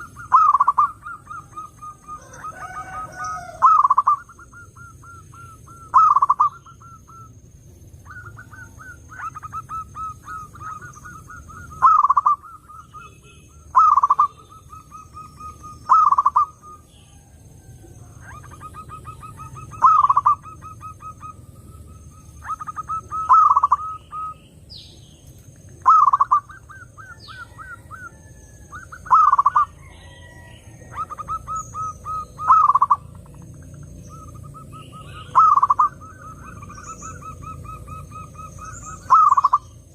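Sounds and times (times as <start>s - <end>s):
dove cooing: 0.0s - 24.5s, 25.6s - 39.9s.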